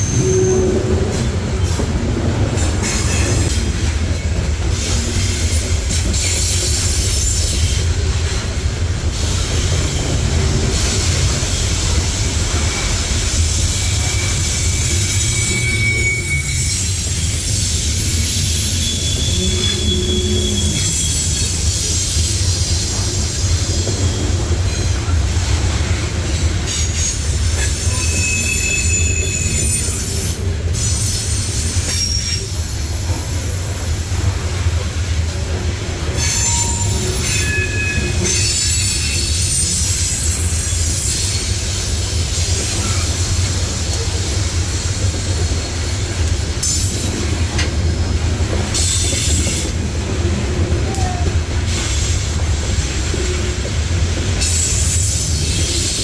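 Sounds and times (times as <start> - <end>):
high-pitched wheel squeals: 0.0 - 1.0, 13.6 - 23.0, 26.9 - 30.1, 36.2 - 41.2
train rumbling past: 0.0 - 56.0.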